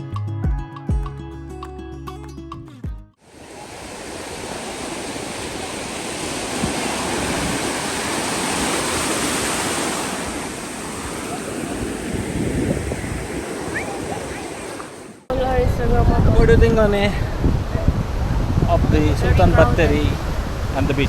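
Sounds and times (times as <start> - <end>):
background music: 0.0 - 3.2
sea surf breaking on beach: 3.2 - 21.0
wind rumbling on microphone: 3.4 - 21.0.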